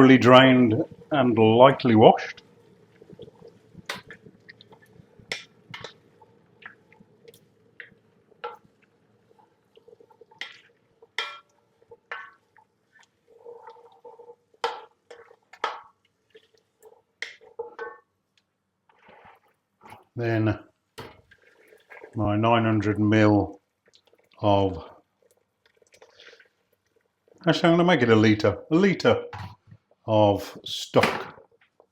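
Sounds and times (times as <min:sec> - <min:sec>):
faint steady hum: 0:00.0 - 0:31.9
spoon and chickpeas knocking pan: 0:10.4 - 0:11.5.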